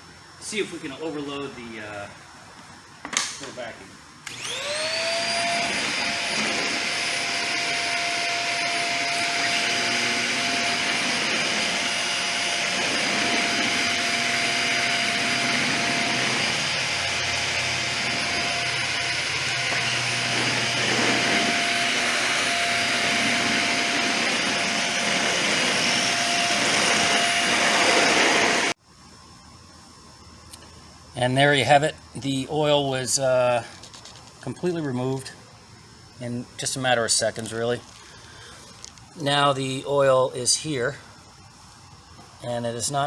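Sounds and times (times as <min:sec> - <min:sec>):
vacuum cleaner running: 0:04.2 - 0:28.8.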